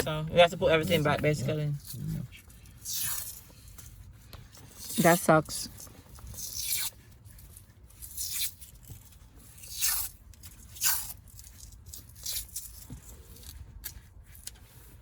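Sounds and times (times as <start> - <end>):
tape tearing off roll: 9.6 - 11.2.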